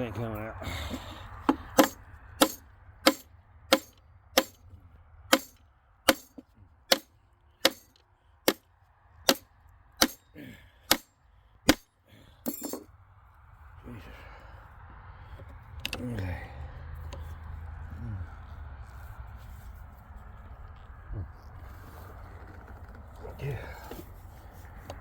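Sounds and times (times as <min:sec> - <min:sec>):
hammer striking metal: 0:01.5 - 0:04.6, 0:05.3 - 0:08.6, 0:10.0 - 0:10.2, 0:10.9 - 0:11.1.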